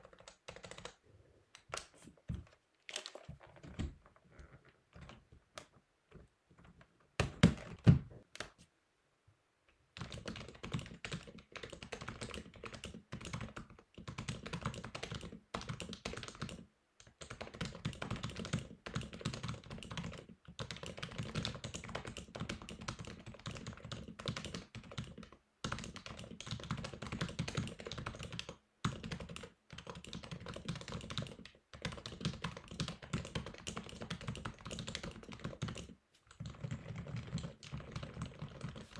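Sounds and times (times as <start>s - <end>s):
keyboard typing: 0.0s - 1.0s, 10.0s - 38.9s.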